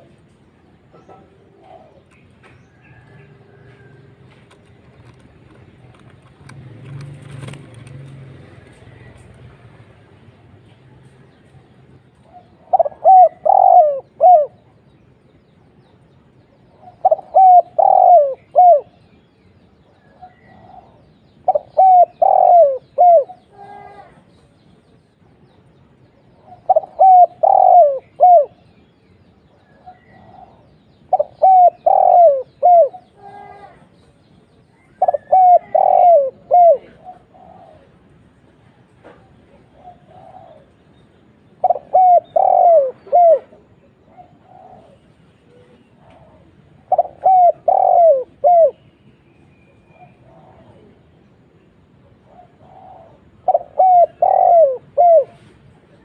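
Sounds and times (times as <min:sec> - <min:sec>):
dove cooing: 0:00.9 - 0:05.2, 0:12.2 - 0:14.8, 0:16.7 - 0:19.0, 0:20.1 - 0:24.2, 0:26.4 - 0:28.7, 0:29.7 - 0:33.8, 0:34.8 - 0:38.3, 0:39.2 - 0:40.8, 0:41.5 - 0:48.8, 0:49.9 - 0:51.1, 0:52.0 - 0:56.0.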